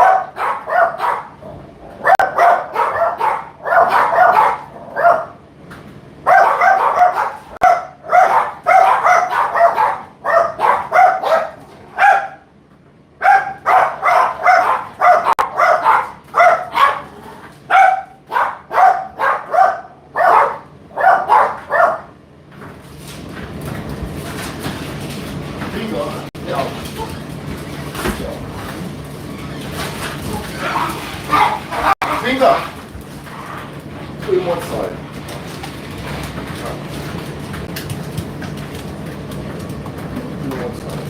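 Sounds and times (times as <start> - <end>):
dog barking: 0.0 - 5.4, 6.2 - 12.5, 13.2 - 22.1, 30.5 - 32.2.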